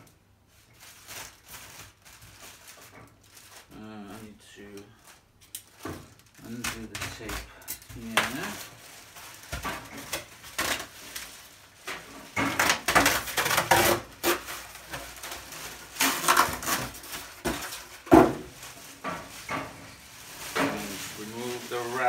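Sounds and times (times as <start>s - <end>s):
packing tape tearing: 5.1s - 22.0s.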